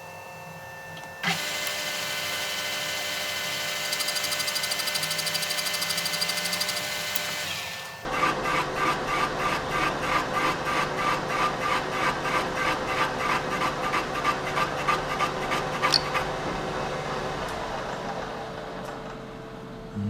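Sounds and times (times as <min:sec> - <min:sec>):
cutter ticking: 0:01.0 - 0:08.1
machine tool boring: 0:01.2 - 0:16.4.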